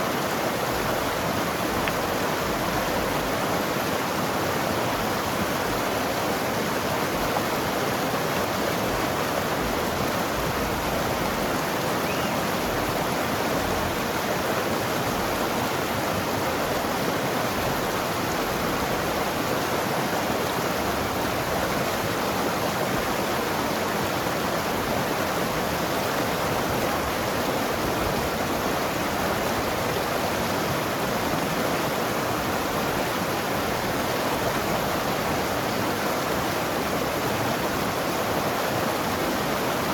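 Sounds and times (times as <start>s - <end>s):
river flowing over rocks: 0.0s - 39.9s.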